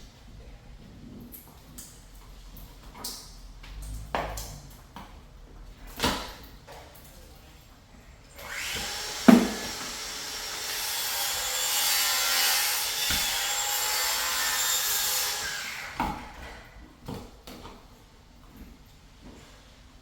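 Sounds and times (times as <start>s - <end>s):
thump: 13.0s - 13.4s.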